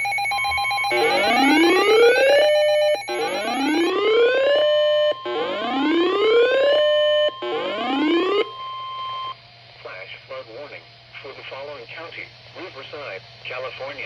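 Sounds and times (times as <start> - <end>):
steady high tone: 0.0 - 9.3
whooping siren tone: 0.0 - 9.3.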